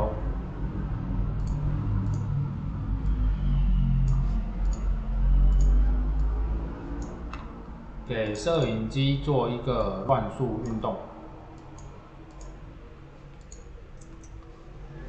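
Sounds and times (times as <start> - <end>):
steady low rumble: 0.0 - 15.0
computer mouse clicks: 1.4 - 2.3, 4.1 - 4.9, 5.5 - 6.4, 7.0 - 7.5, 11.6 - 12.6, 13.3 - 14.5.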